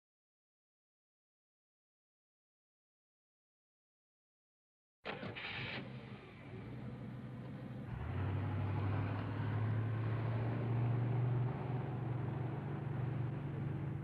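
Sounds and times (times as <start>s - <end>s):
low engine hum: 5.5s - 14.0s.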